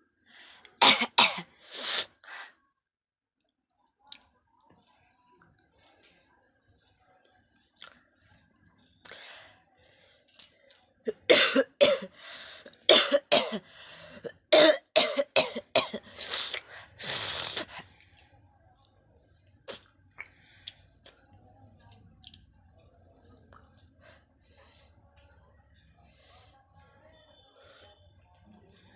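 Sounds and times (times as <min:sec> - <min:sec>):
person clearing throat: 0:00.8 - 0:01.5, 0:11.1 - 0:12.1, 0:12.9 - 0:13.6
person coughing hard: 0:00.8 - 0:01.6, 0:11.1 - 0:12.2, 0:12.9 - 0:17.7.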